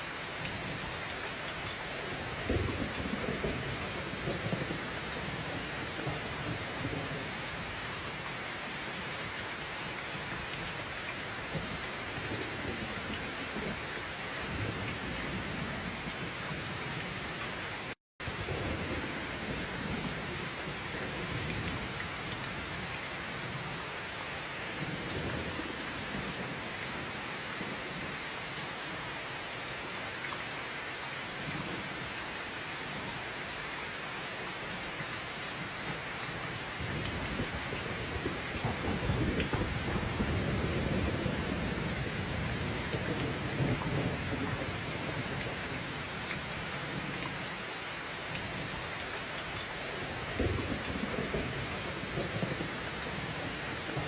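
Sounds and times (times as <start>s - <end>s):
heavy rain: 0.0s - 54.0s
low thunder rolls: 36.8s - 45.3s.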